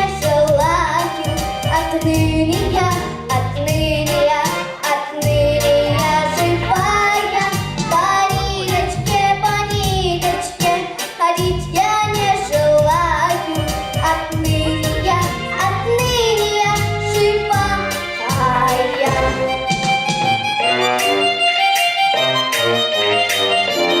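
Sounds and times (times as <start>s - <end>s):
backing track with steady beat: 0.0s - 24.0s
person singing: 17.2s - 19.5s.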